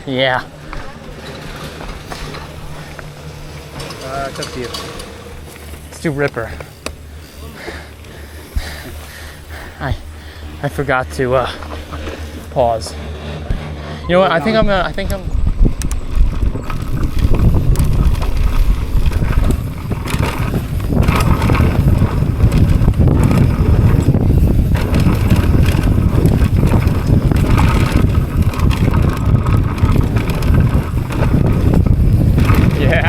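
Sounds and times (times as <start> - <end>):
bike rattles and knocks: 0.0 - 33.0
bike tyres rumbling over dirt: 0.0 - 33.0
wind buffeting microphone: 10.5 - 33.0.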